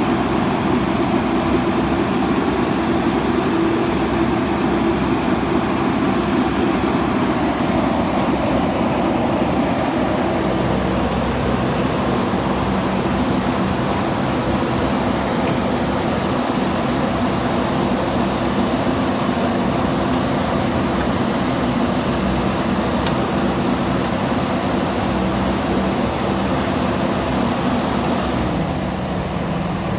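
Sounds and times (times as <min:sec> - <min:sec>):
diesel engine running: 0:00.0 - 0:29.9.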